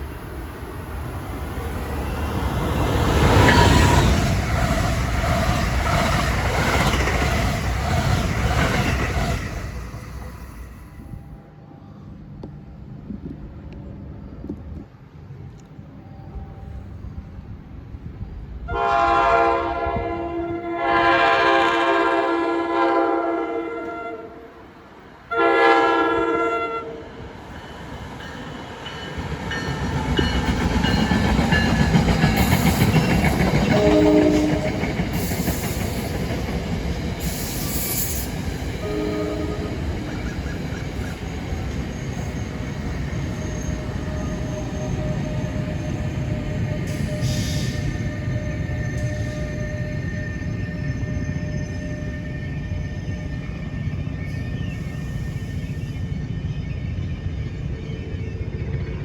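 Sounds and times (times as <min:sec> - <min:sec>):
train rumble and wheel clatter: 0:00.0 - 0:59.0
train horn blasts: 0:18.7 - 0:27.3, 0:33.6 - 0:35.0, 0:38.8 - 0:40.0.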